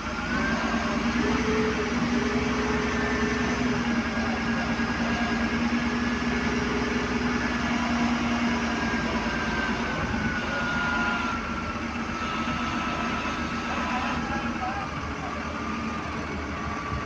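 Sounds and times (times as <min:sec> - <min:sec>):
machine motor humming: 0:00.0 - 0:17.0.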